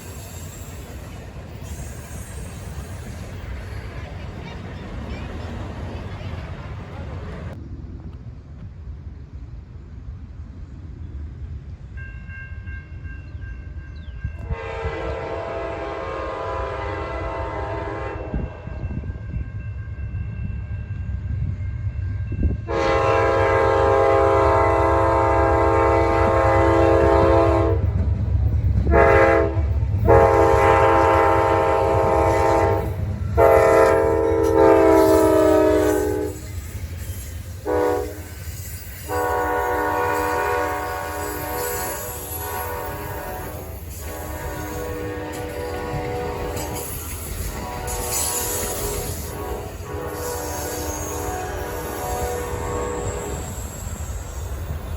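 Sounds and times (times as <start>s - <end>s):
train rumbling: 0.0s - 54.9s
train horn blasts: 14.4s - 18.8s, 22.6s - 28.0s, 28.8s - 54.8s.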